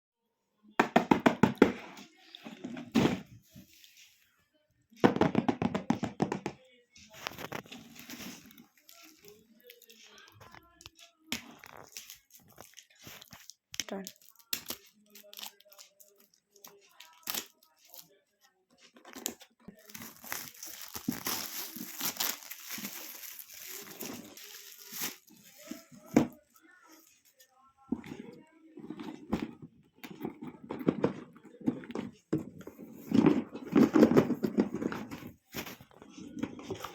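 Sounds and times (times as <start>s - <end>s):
toy kit crinkling and crackling: 7.0s - 36.9s.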